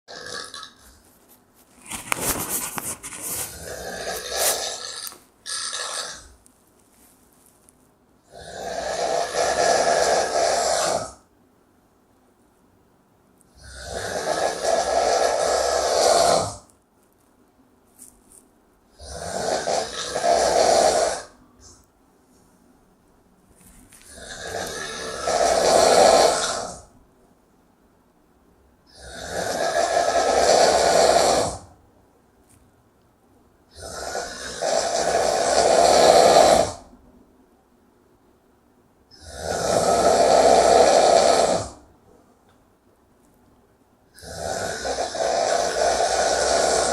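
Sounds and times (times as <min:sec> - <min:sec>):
person snoring loudly: 0:00.1 - 0:00.9, 0:03.5 - 0:06.4, 0:08.3 - 0:11.2, 0:13.5 - 0:16.7, 0:18.9 - 0:21.4, 0:24.1 - 0:26.9, 0:28.9 - 0:31.7, 0:33.7 - 0:36.9, 0:39.1 - 0:41.8, 0:44.1 - 0:46.9.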